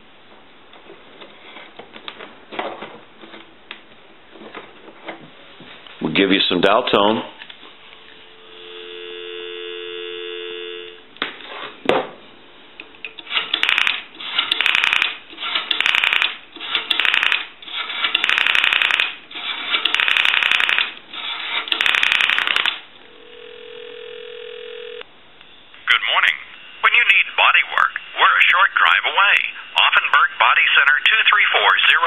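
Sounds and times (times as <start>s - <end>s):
steady phone tone: 8.2s - 11.1s, 23.1s - 25.0s
phone dial tone: 8.3s - 11.1s, 23.1s - 25.0s.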